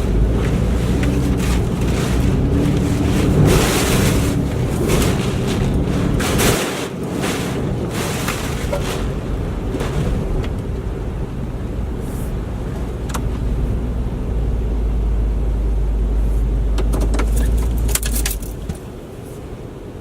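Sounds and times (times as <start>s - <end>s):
flying debris clicks and rattles: 0.0s - 10.8s, 17.0s - 18.9s
hurricane wind gusting: 0.0s - 16.0s
wind rumble on microphone: 0.0s - 20.0s.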